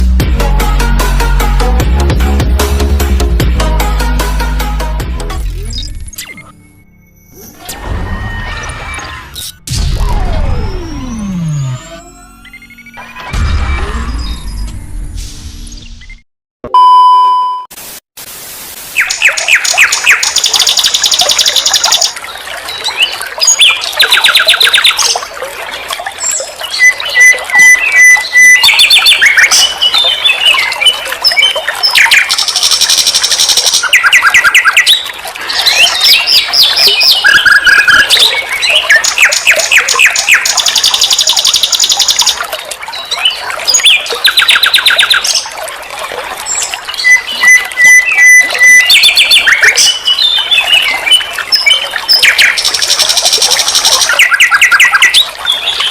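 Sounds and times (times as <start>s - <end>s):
short electronic beep: 15.6s - 17.7s.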